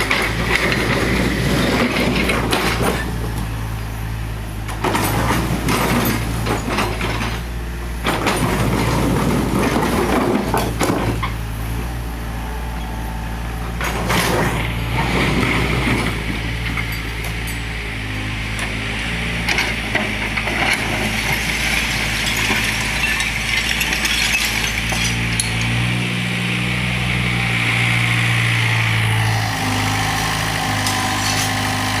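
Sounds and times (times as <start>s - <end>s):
excavator diesel engine running: 0.0s - 32.0s
rubble crunching and clattering: 4.7s - 11.5s, 19.4s - 25.9s.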